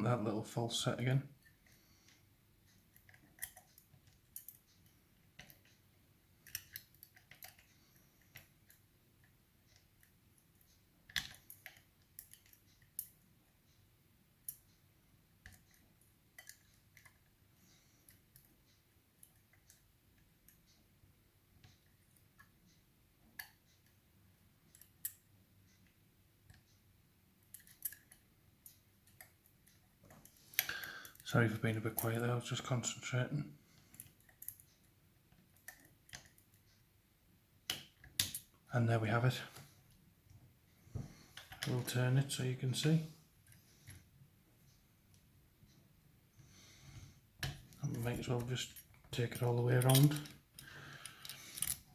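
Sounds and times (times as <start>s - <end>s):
lock pick metallic clicks: 27.4s - 29.3s, 37.7s - 38.5s, 49.3s - 51.9s.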